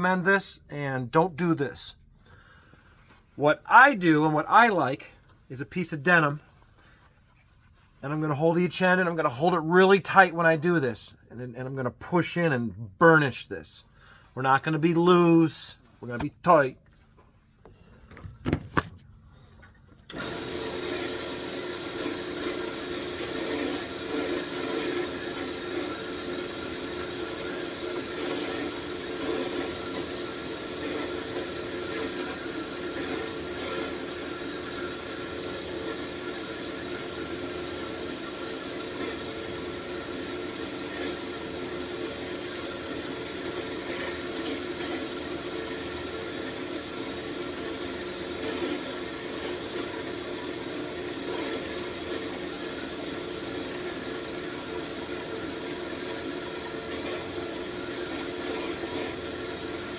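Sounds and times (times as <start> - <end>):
wood lathe running: 20.1 - 59.9.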